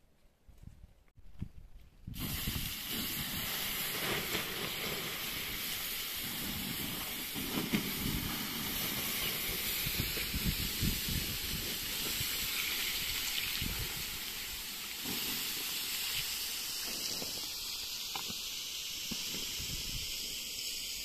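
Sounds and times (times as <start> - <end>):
steady hiss: 2.1 - 21.0.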